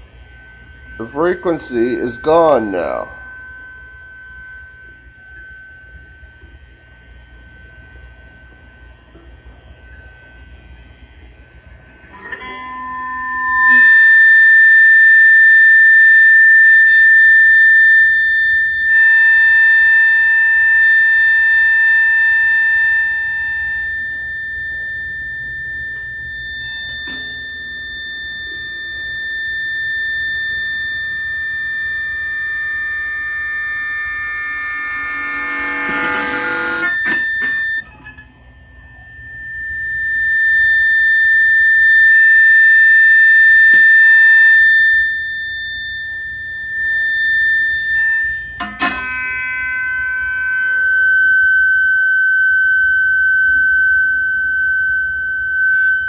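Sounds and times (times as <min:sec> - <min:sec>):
electric guitar feedback: 0:00.0 - 0:56.0.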